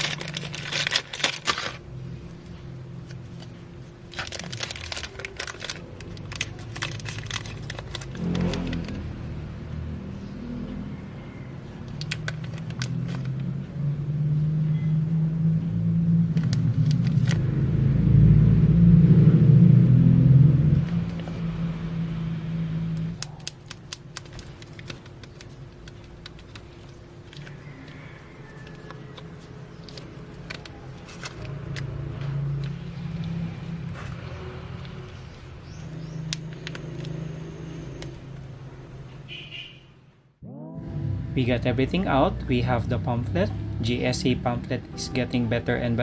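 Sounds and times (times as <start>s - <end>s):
plastic packaging crackling: 0.0s - 1.9s, 3.0s - 9.0s, 11.9s - 13.4s, 23.1s - 37.1s
low rumble: 14.7s - 23.2s, 40.4s - 43.8s.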